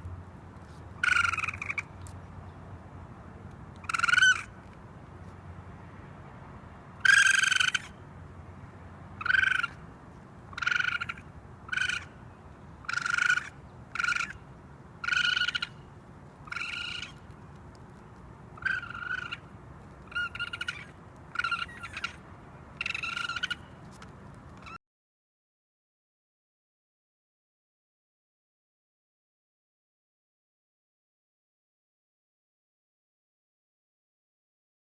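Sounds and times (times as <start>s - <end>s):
raccoon calling: 1.0s - 2.1s, 3.8s - 4.6s, 7.0s - 8.0s, 9.2s - 9.8s, 10.5s - 12.2s, 12.8s - 14.4s, 15.0s - 17.2s, 18.6s - 19.5s, 20.1s - 22.2s, 22.8s - 23.8s.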